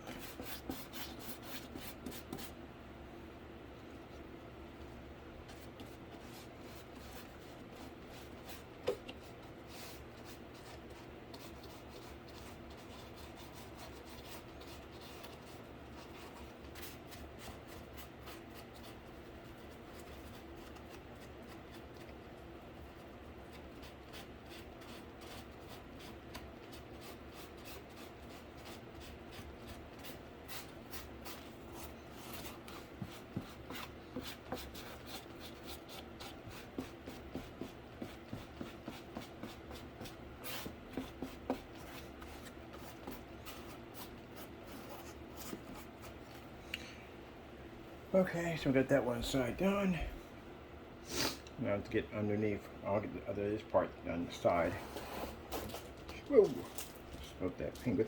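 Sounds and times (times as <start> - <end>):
scratchy paint strokes: 5.4 - 46.5.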